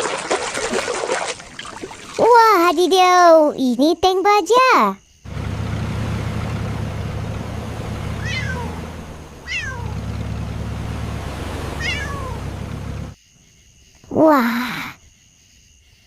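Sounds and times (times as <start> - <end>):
tank engine low rumble: 5.3 - 13.2
short high squeals: 7.8 - 10.1.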